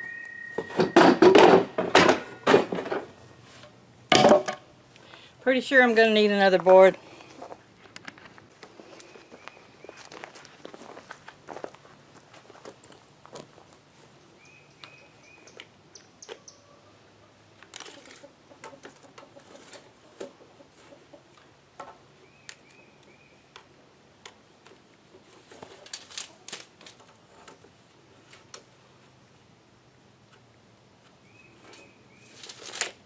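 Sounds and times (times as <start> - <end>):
bird chirping: 0.0 - 1.1, 14.2 - 16.8, 22.2 - 23.6, 31.2 - 32.4.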